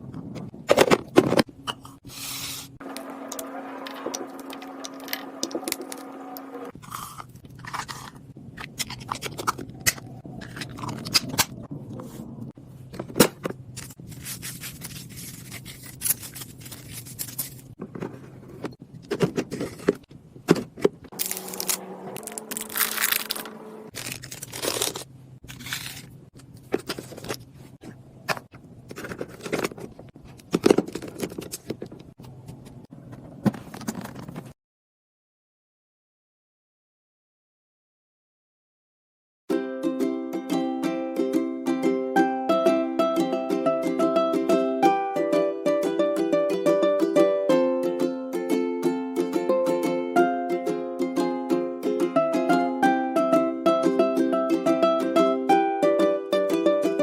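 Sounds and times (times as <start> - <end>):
packages scraping and crinkling: 21.1 - 27.8, 28.9 - 30.1.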